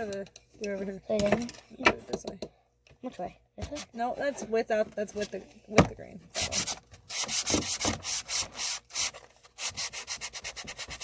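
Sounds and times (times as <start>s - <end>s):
sandpaper rubbing on wood: 6.4s - 11.0s.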